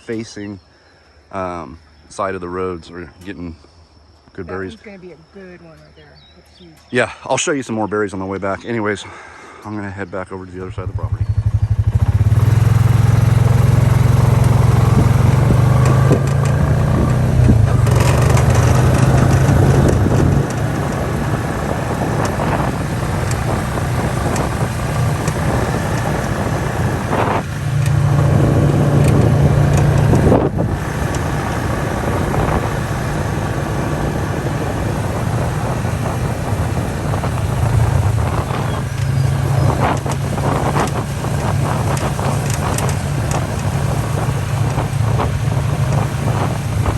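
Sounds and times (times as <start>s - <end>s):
wind and road noise: 0.0s - 46.9s
motorbike engine running: 10.7s - 46.9s.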